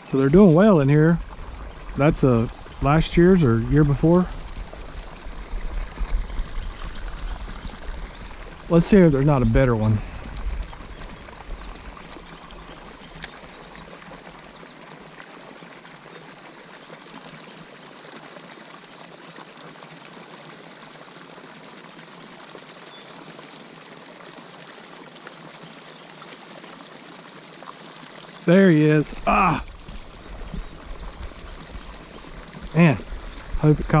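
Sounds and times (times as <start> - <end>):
water pouring into a pond: 0.0 - 34.0
small clicks: 13.1 - 13.4.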